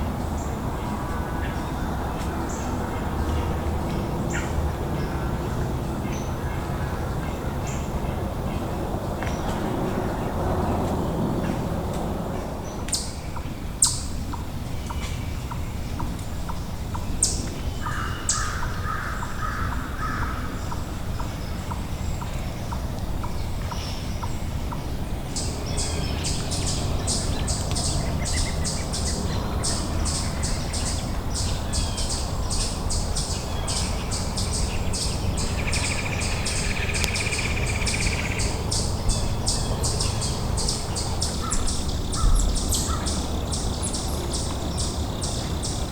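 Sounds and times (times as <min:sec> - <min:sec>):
wild birds chirping: 0:00.0 - 0:45.9
steady low rumble: 0:20.5 - 0:45.9.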